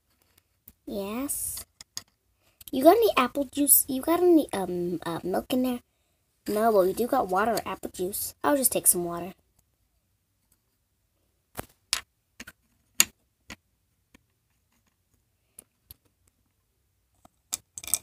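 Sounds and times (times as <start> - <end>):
small objects clicking and knocking: 0.0 - 0.8, 1.4 - 2.8, 11.5 - 16.5, 17.2 - 18.0.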